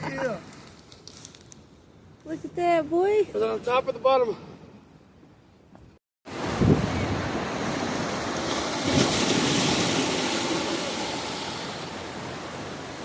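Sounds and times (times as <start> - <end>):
ocean surf breaking on beach: 6.3 - 13.0
wind on microphone: 6.4 - 12.3.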